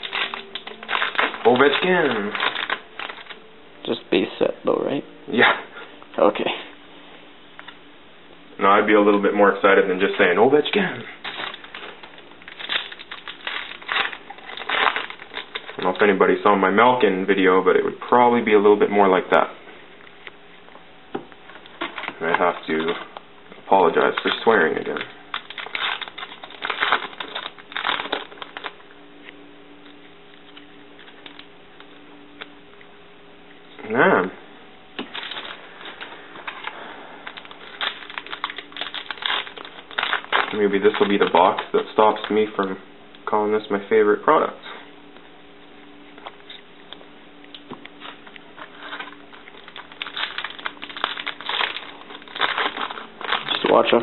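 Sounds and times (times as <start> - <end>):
plastic wrapper crinkling and tearing: 0.0 - 3.5, 11.2 - 16.4, 21.6 - 23.1, 23.7 - 28.8, 29.8 - 32.5, 35.0 - 42.7, 47.5 - 54.0
faint steady hum: 0.0 - 54.0.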